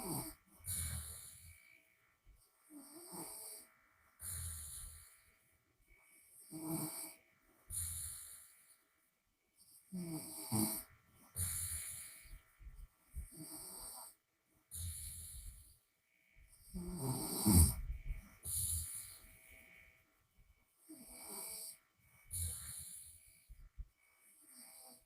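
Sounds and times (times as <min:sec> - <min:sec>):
woman snoring: 0:00.0 - 0:01.7, 0:02.6 - 0:05.2, 0:06.3 - 0:08.5, 0:09.9 - 0:12.3, 0:13.2 - 0:15.7, 0:16.6 - 0:19.6, 0:20.8 - 0:23.4, 0:24.4 - 0:25.0.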